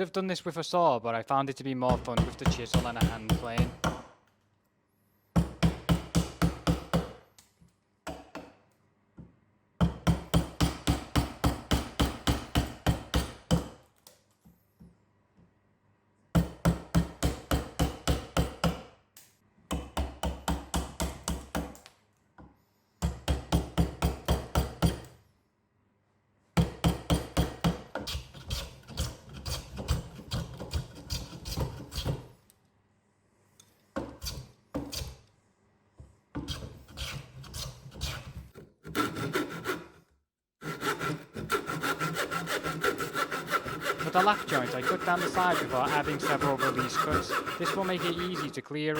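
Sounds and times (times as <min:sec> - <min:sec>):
mallet striking chisel: 0:05.4 - 0:07.2, 0:09.8 - 0:13.8, 0:16.4 - 0:18.9, 0:19.7 - 0:21.8, 0:26.6 - 0:32.2.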